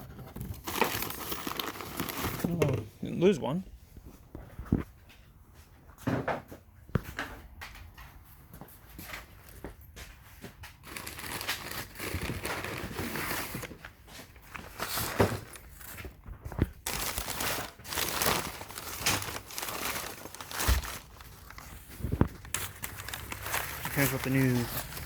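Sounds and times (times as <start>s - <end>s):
packaging crinkling: 0.6s - 2.6s, 10.8s - 13.8s, 16.8s - 25.0s.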